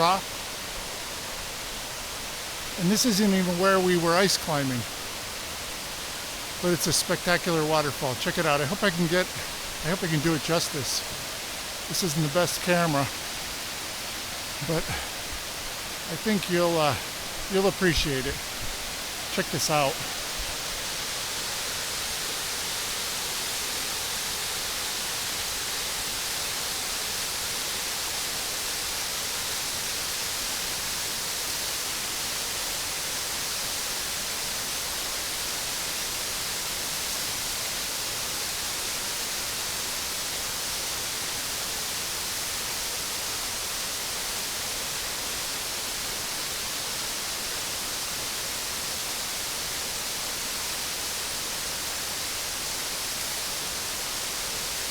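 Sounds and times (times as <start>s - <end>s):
waterfall rushing: 0.0s - 31.7s.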